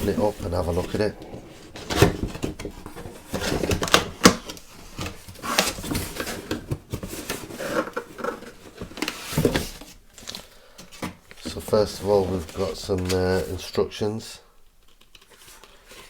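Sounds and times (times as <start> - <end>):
cardboard box being opened: 0.0 - 10.4
scrapes rustles and knocks: 0.0 - 13.6.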